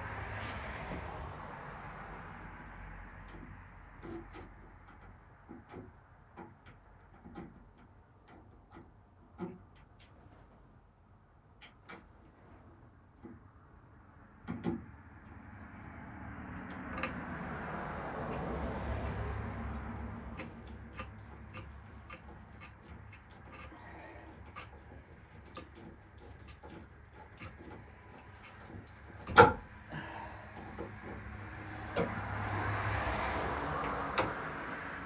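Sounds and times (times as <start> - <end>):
small metal clicks and knocks: 3.2 - 10.3, 18.3 - 29.7.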